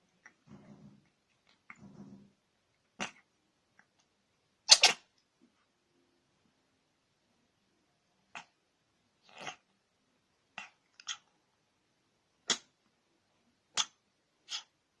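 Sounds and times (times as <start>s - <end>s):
cat sneezing: 4.7s - 5.1s, 13.7s - 14.7s.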